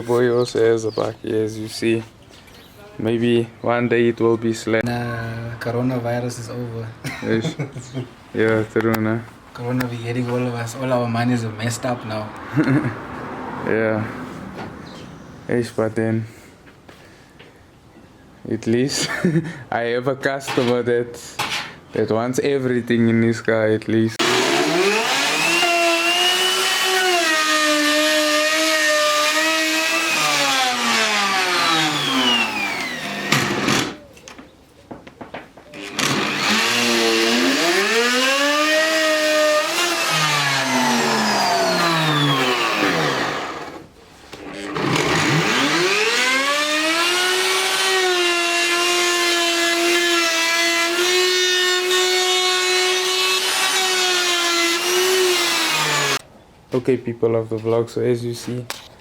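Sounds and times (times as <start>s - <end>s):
power tool cutting wood: 24.2s - 34.0s, 35.8s - 56.2s.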